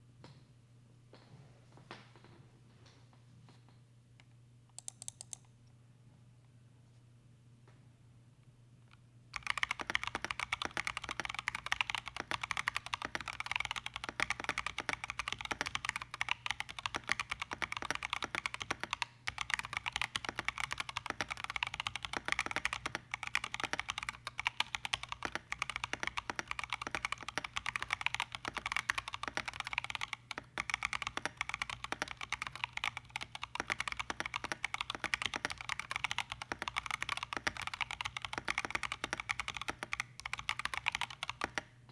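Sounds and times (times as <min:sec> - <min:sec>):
typing on mechanical keyboard: 0:04.8 - 0:05.5, 0:09.4 - 0:41.7.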